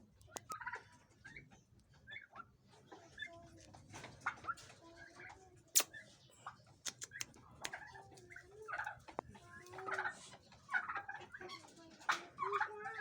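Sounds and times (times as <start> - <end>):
pheasants clucking: 0.0 - 13.0
sharp clicks and taps: 6.8 - 7.8.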